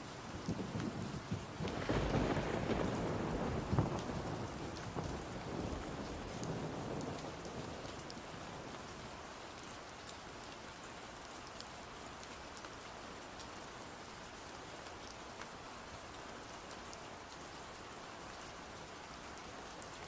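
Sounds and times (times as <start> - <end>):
steady rain falling: 0.0 - 20.0
thunder rumble: 0.4 - 8.0.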